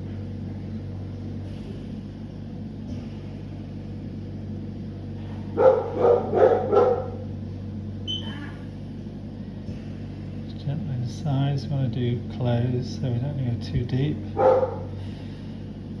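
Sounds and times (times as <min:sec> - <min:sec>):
steady low hum: 0:00.0 - 0:16.0
dog barking: 0:05.6 - 0:07.2, 0:14.4 - 0:14.9.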